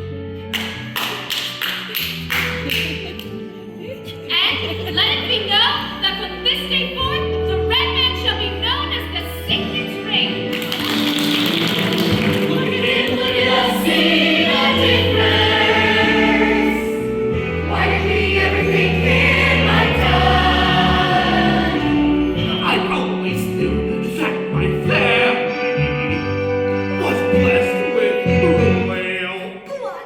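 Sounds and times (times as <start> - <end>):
instrumental accompaniment: 0.0 - 29.2
chorus singing: 10.9 - 26.1.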